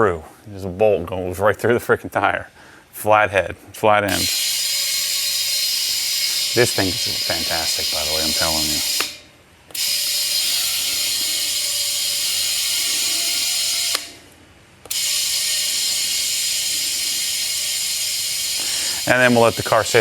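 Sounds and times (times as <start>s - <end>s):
electric air compressor buzzing: 4.1s - 20.0s.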